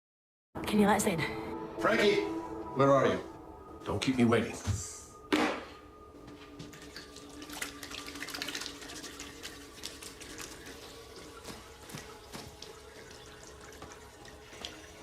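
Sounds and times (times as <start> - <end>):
water running and dripping: 6.4 - 15.0
small drips and clicks: 6.6 - 15.0.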